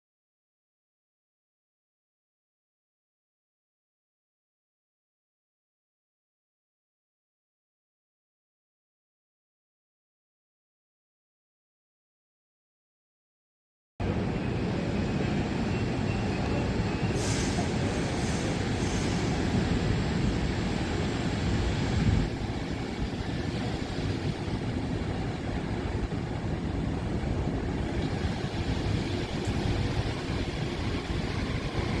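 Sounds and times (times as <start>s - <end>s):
train wheels rumbling on rails: 14.0s - 32.0s
high wheel squeals: 15.4s - 19.7s.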